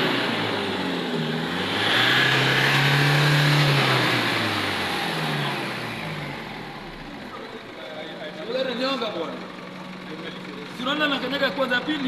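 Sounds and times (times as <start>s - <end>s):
pickup engine revving: 0.0s - 7.2s.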